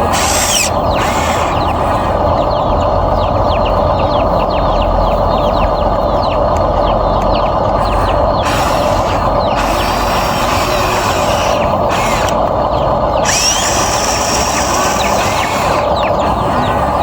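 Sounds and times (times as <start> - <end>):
electric motor whir: 0.0 - 1.8, 8.4 - 12.6, 13.2 - 16.2.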